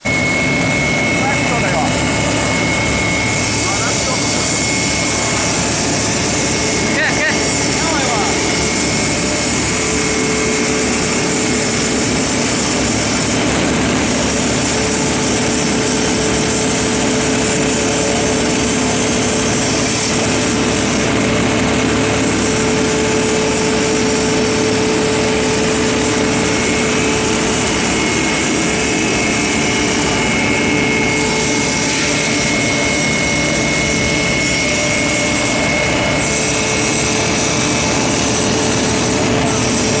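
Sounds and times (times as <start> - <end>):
grinding machine whining: 0.0 - 40.0.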